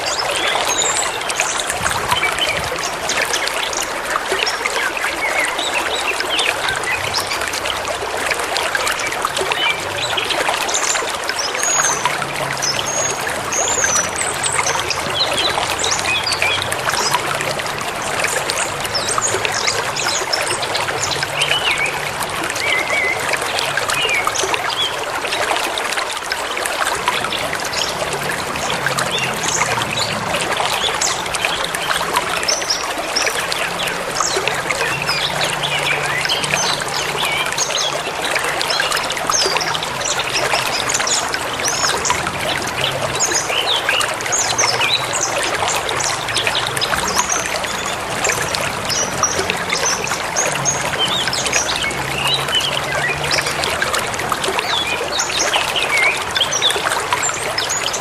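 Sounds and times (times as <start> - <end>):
river running: 0.0 - 58.0.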